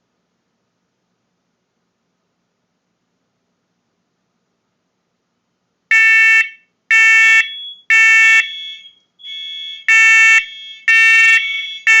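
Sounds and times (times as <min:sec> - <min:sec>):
faint distant alarm beeps: 0:05.9 - 0:12.0
shrill smoke alarm beeps: 0:05.9 - 0:12.0.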